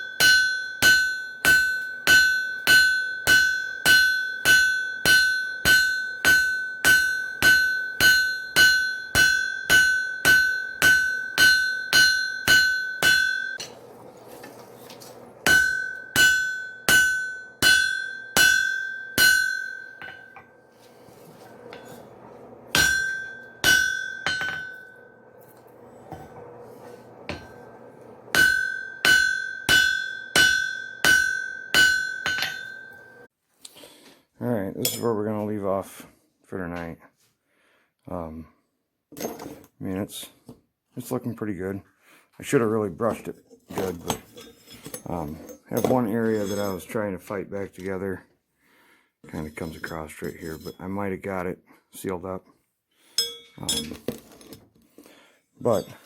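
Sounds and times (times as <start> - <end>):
hammer striking iron on anvil: 0.0 - 13.8, 15.4 - 20.5, 22.7 - 25.2, 27.3 - 27.7, 28.3 - 33.2, 53.2 - 53.9.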